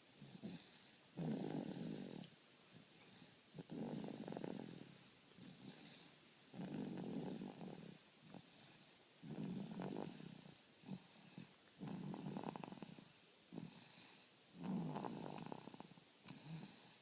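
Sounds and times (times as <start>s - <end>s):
faint breaths: 0.0s - 17.0s
rough snores: 0.2s - 2.3s, 3.6s - 8.4s, 9.2s - 11.1s, 11.8s - 14.0s, 14.6s - 17.0s.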